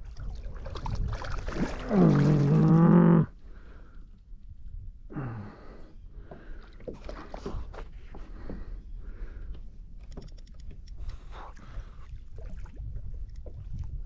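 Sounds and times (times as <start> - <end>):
man groaning with effort: 1.8 - 3.3.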